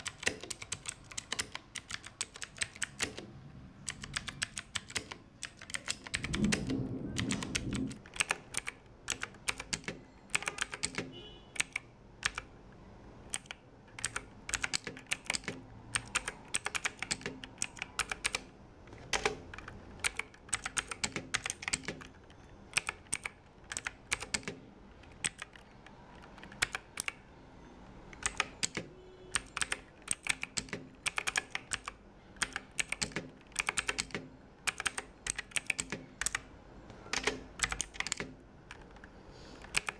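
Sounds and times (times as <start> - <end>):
mechanical keyboard key clicks: 0.0 - 12.5, 13.3 - 27.2, 28.1 - 39.9.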